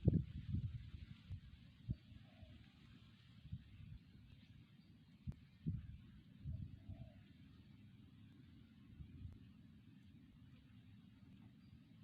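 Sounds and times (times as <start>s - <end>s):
faint low rumble and hiss: 0.0s - 12.0s.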